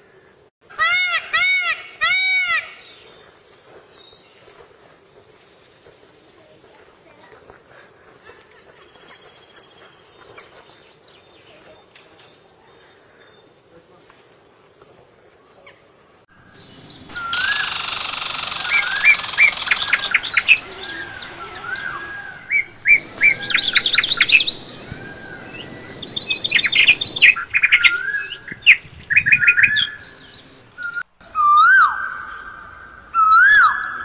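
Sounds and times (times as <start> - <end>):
birds chirping and singing: 16.4 - 31.0.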